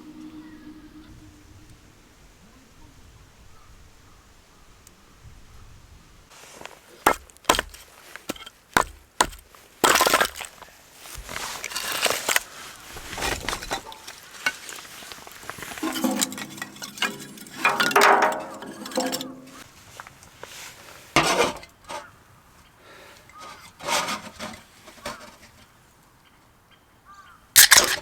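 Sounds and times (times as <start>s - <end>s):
wood knocking and cracking: 7.1s - 10.6s, 15.5s - 19.6s.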